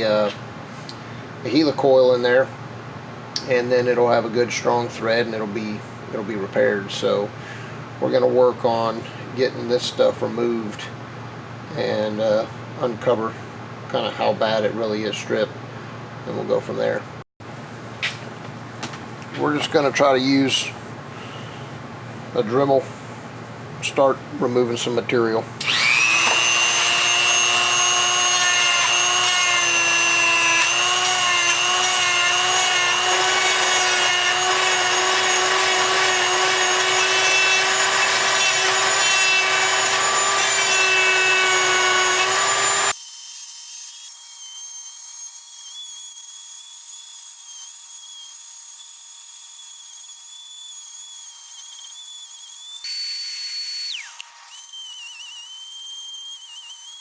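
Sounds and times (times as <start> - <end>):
rotary tool grinding: 47.1 - 57.0.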